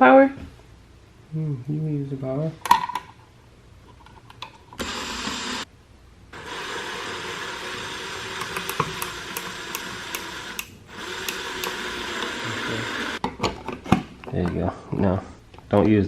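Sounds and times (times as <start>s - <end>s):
cordless drill driving a screw: 8.1s - 13.2s.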